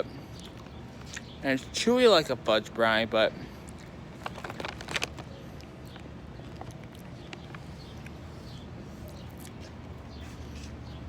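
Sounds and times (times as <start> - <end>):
chewing with mouth clicks: 0.4 - 1.4, 3.6 - 10.8.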